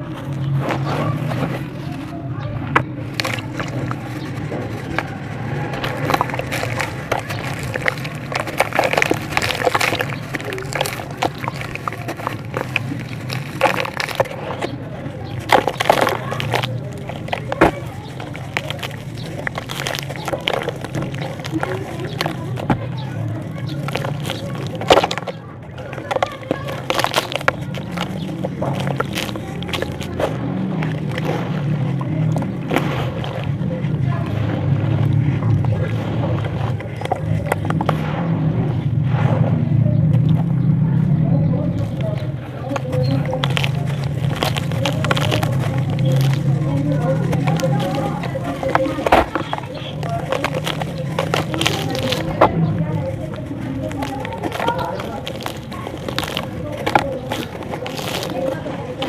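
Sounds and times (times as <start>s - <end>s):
block crumbling by hand: 0.0s - 38.2s, 41.6s - 59.0s
low rumble: 37.2s - 42.6s.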